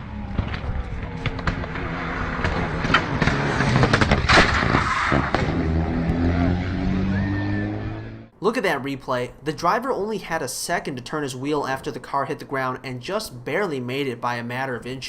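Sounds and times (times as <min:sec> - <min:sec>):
car moving with road noise: 0:00.0 - 0:08.4
car crashing onto road: 0:00.2 - 0:06.0.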